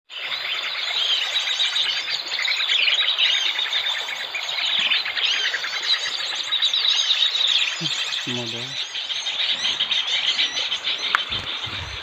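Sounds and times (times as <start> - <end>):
small birds chirping: 0.1 - 12.0.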